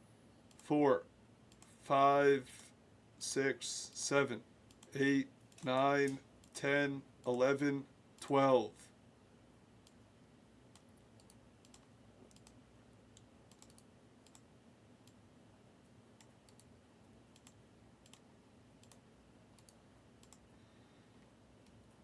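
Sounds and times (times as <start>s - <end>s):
faint irregular clicks: 0.4s - 0.7s, 1.5s - 1.8s, 4.7s - 6.6s, 9.8s - 10.0s, 10.7s - 15.2s, 16.2s - 20.6s.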